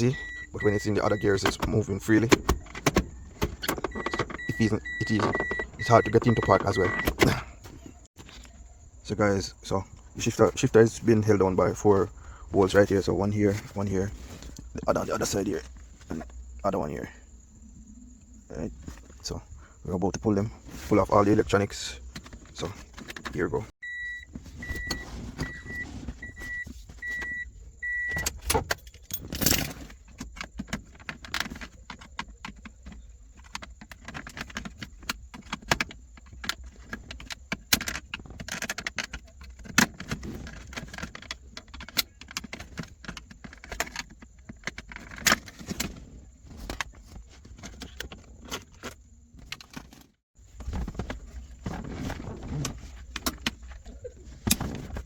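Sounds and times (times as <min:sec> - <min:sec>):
car warning chime beeping: 0:00.0 - 0:01.6, 0:03.6 - 0:07.2, 0:23.8 - 0:28.4.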